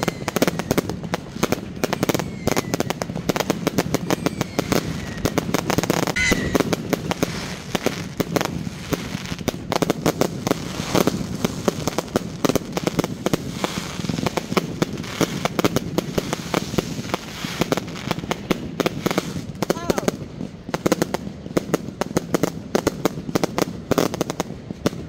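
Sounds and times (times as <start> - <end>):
firework whistle: 0.0 - 8.2
fireworks bangs and crackles: 0.0 - 25.0.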